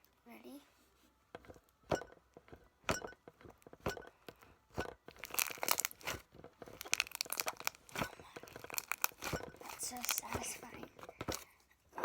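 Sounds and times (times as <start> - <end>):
crackling clicks: 1.4 - 11.4
slime popping when squeezed: 5.2 - 6.2, 6.8 - 10.5.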